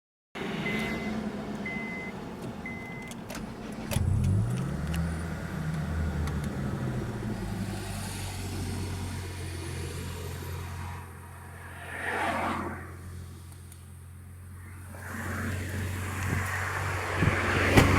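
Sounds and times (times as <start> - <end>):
car engine starting and idling: 0.4 - 11.4
short beeps: 0.6 - 3.1.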